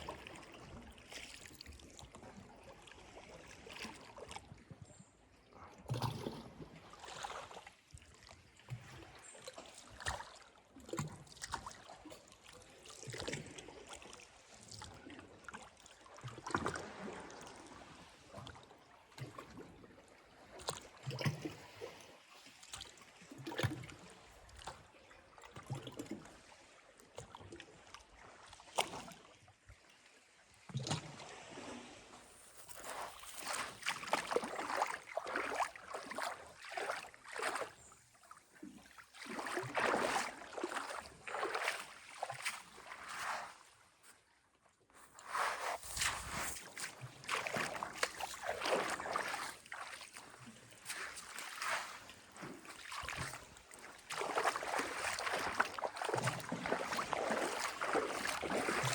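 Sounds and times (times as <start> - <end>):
seawater lapping and sloshing: 0.0 - 58.9
wash of water: 45.2 - 58.9.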